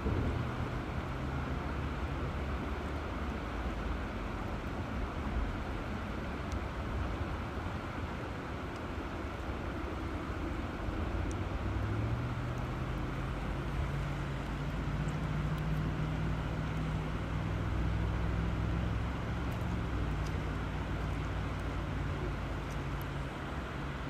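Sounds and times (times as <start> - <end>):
river water flowing: 0.0 - 24.0.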